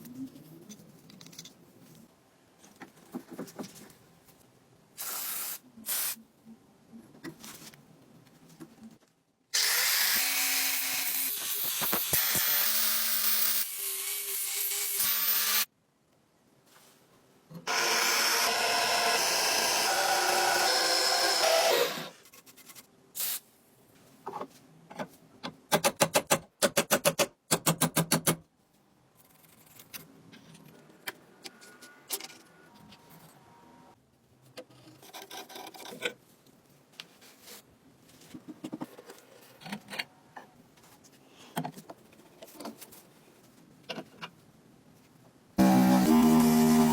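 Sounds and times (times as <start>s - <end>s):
power tool running: 17.7s - 22.1s, 45.6s - 46.9s.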